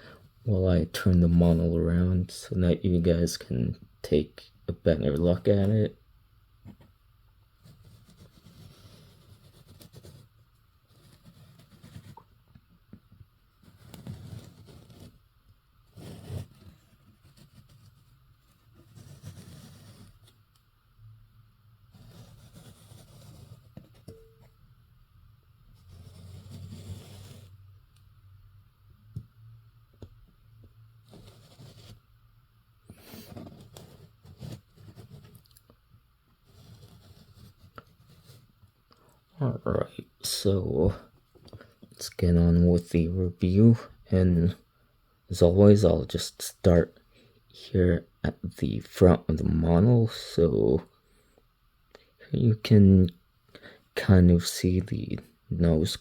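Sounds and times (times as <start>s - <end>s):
soft scrapes and light clicks: 32.9s - 35.8s.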